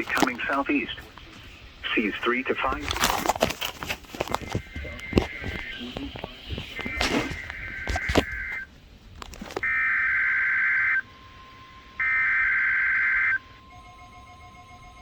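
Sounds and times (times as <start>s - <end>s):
faint steady tone: 4.6s - 15.0s
warbling data bursts: 4.6s - 15.0s
steady and pulsing alert tones: 9.6s - 15.0s.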